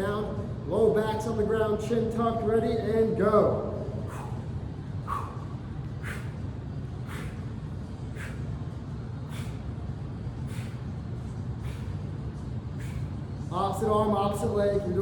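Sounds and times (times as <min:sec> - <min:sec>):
low hum: 0:00.0 - 0:15.0
sharp breathing exhales: 0:04.0 - 0:09.8, 0:10.4 - 0:13.4.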